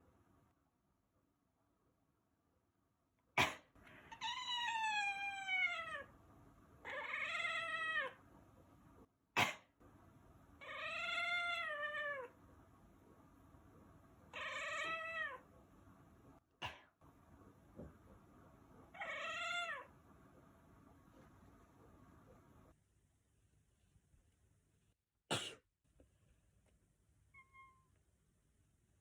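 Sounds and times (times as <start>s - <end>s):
cat meowing: 4.1s - 6.1s, 6.8s - 8.2s, 10.6s - 12.3s, 14.3s - 15.4s, 18.9s - 19.9s.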